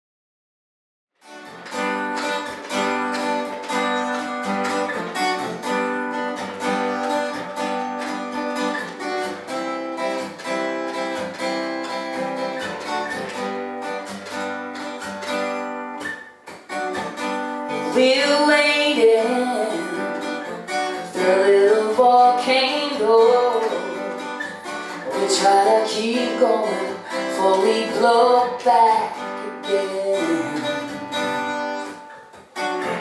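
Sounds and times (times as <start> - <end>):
acoustic guitar strumming chords: 1.2 - 33.0.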